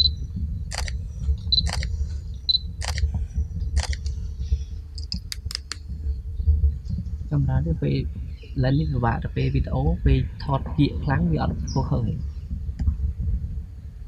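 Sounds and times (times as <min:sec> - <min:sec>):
low rumble: 0:00.0 - 0:14.0
camera shutter clicking: 0:00.7 - 0:01.0, 0:01.6 - 0:01.9, 0:02.8 - 0:03.1, 0:03.8 - 0:04.1, 0:05.0 - 0:05.8.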